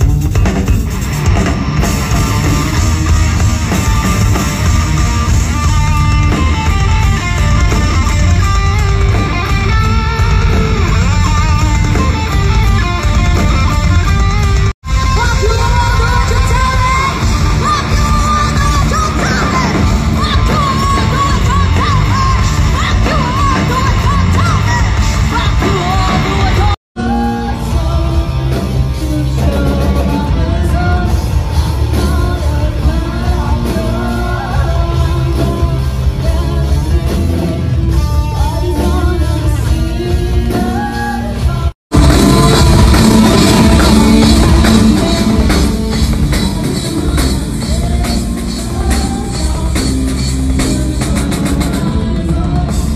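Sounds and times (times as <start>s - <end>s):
live metal band playing: 0.0s - 52.9s
person singing and yelling: 14.8s - 52.9s.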